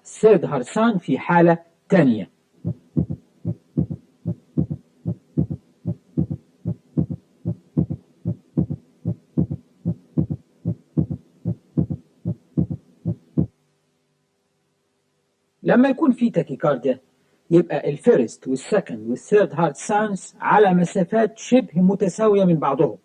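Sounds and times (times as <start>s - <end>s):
heartbeat through stethoscope: 2.6s - 13.5s.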